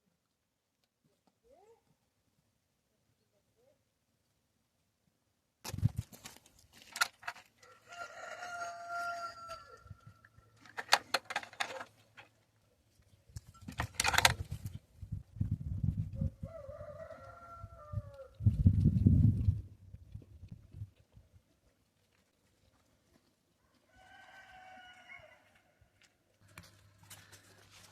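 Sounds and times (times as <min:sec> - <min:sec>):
rooster crowing: 0:07.6 - 0:09.9, 0:16.4 - 0:18.3, 0:23.8 - 0:25.8.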